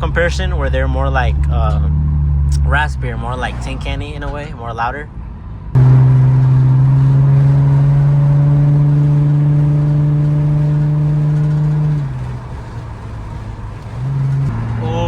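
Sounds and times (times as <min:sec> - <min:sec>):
car exhaust drone: 0:05.6 - 0:15.0.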